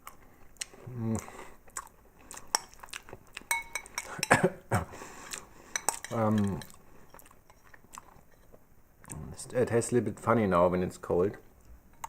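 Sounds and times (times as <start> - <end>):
person humming hmm: 0.8 - 1.5.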